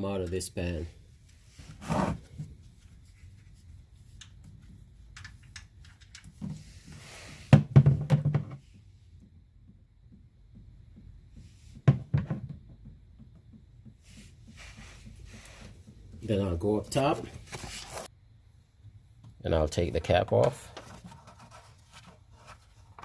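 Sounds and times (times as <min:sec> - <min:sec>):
knocks and clunks under car: 0:07.5 - 0:16.3.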